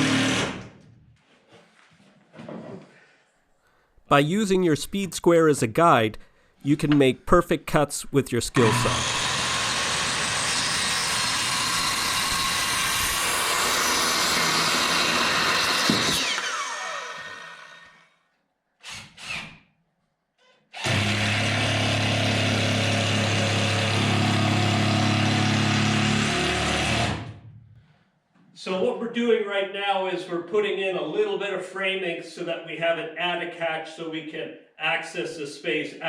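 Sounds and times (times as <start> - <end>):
circular saw cutting wood: 0.0 - 0.7, 8.6 - 18.1, 20.8 - 27.3
saw motor winding down: 0.0 - 0.7, 8.6 - 18.1, 20.8 - 27.3
power tool running: 0.0 - 0.8, 8.6 - 18.0, 20.8 - 27.4.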